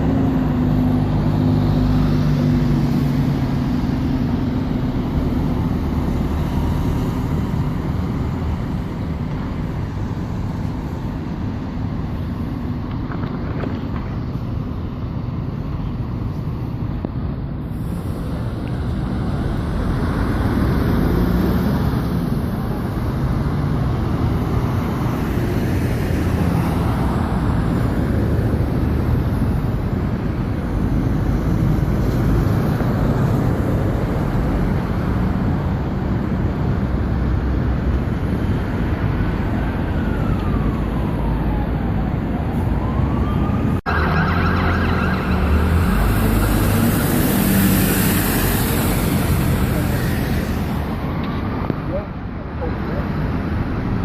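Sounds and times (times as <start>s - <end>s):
city road traffic: 0.0s - 54.0s
faint siren wailing: 39.3s - 48.8s.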